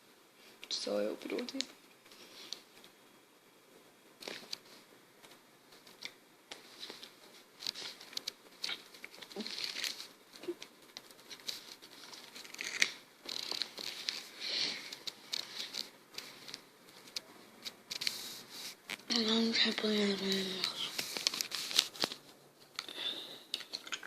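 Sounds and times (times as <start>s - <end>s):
candy wrapper crinkling and tearing: 7.7s - 10.1s, 11.0s - 15.9s.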